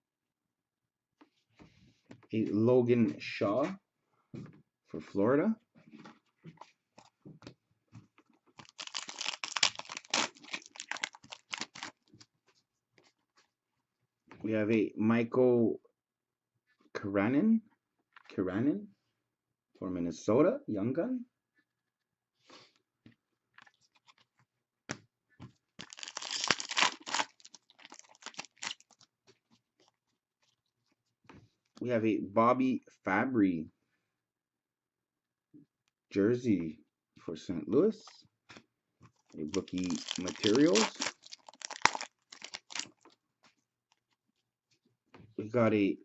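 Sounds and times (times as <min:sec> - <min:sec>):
foil wrapper crinkling: 0:08.6 - 0:12.1, 0:25.8 - 0:29.1, 0:39.3 - 0:43.1.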